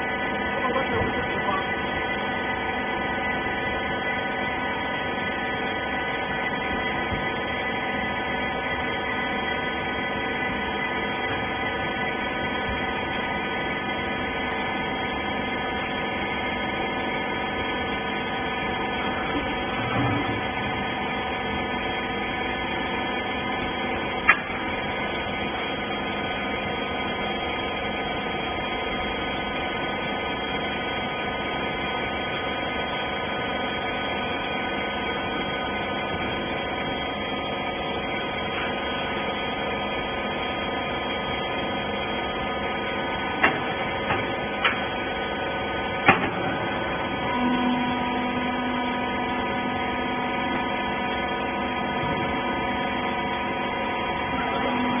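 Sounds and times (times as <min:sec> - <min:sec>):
motor and pump hum: 0:00.0 - 0:55.0.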